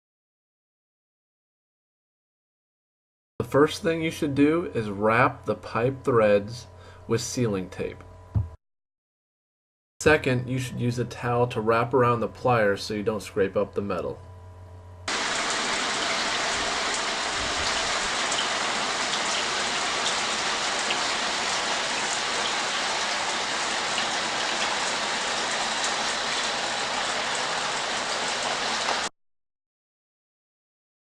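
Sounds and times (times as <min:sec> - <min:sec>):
shower water spraying and splashing: 0:15.1 - 0:29.1.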